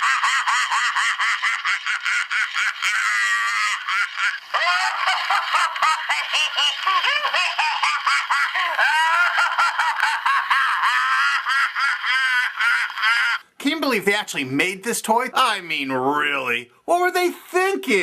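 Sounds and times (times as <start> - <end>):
toy doll cackling laugh: 0.0 - 13.5.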